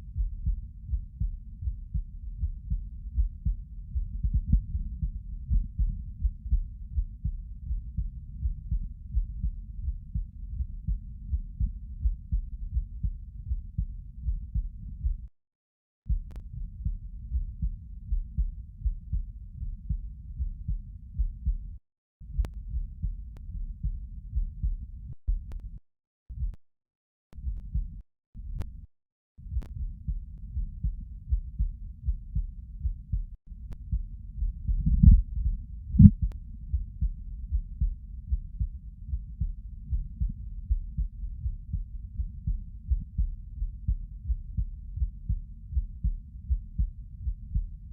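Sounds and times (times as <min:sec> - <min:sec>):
heartbeat thumps: 0:00.0 - 0:15.3, 0:16.1 - 0:25.8, 0:26.4 - 0:26.6, 0:27.4 - 0:28.8, 0:29.4 - 0:47.9
faint clicks: 0:16.3 - 0:16.5, 0:25.5 - 0:25.8.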